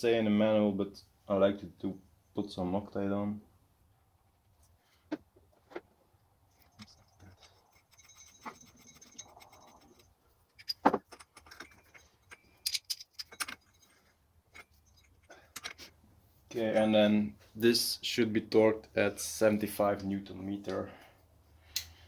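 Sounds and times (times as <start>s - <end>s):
steel parts and tools clinking: 6.5s - 15.9s, 21.7s - 22.0s.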